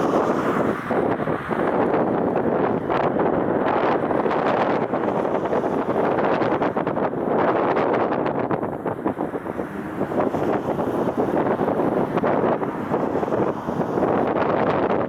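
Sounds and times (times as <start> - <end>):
gusty wind buffeting microphone: 0.0 - 15.0.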